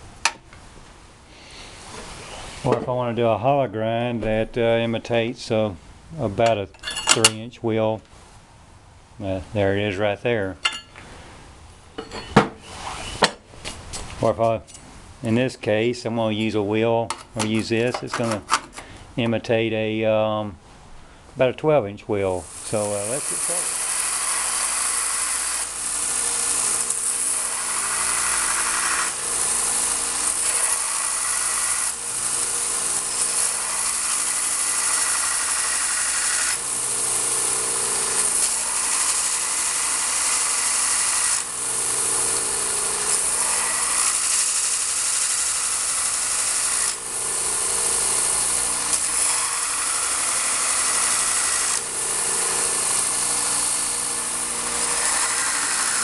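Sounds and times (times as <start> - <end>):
belt sander grinding metal: 22.5 - 56.0.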